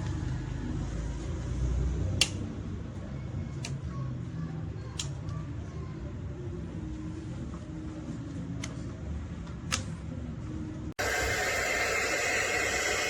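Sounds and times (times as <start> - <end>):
hot air styler blowing: 11.0 - 13.0.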